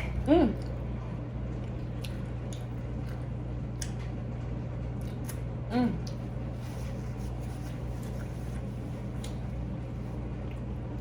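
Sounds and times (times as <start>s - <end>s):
steady low hum: 0.0s - 11.0s.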